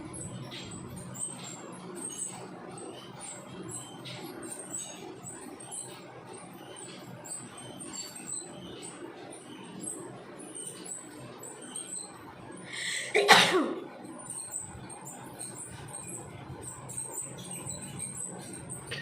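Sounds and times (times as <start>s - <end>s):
woman sneezing: 12.8s - 13.8s.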